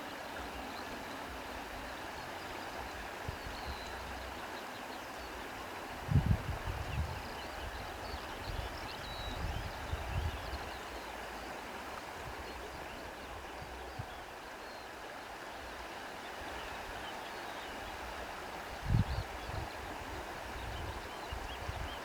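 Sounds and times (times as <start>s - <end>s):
flowing stream: 0.0s - 22.0s
wind rumble on microphone: 6.0s - 10.8s, 18.8s - 22.0s.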